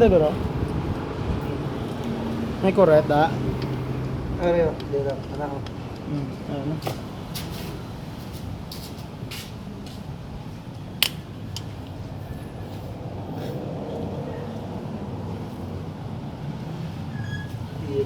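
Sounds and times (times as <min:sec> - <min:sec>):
metallic tool clicks and taps: 0:04.8 - 0:06.1, 0:11.0 - 0:12.0.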